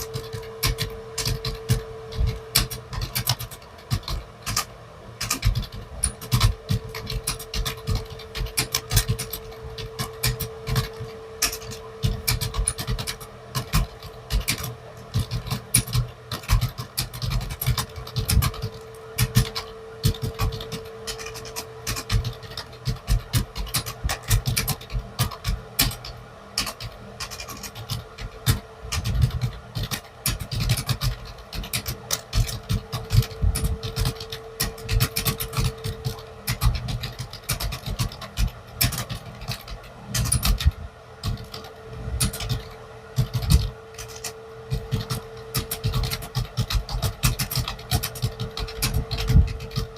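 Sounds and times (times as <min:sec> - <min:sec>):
computer keyboard typing: 0:00.0 - 0:49.9
faint steady hum: 0:00.0 - 0:49.9.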